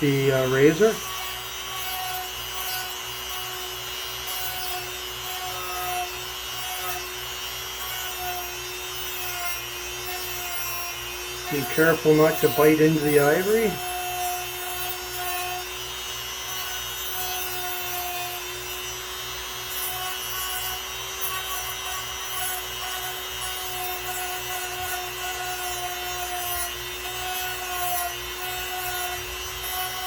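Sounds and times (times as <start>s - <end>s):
grinding wheel motor whine: 0.0s - 30.0s
scratchy grinding rub: 4.2s - 15.7s, 19.7s - 30.0s.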